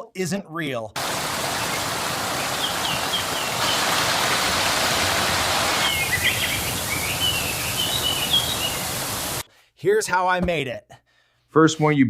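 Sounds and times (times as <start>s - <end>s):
falling water rushing: 1.0s - 9.4s
birds chirping: 1.0s - 9.5s.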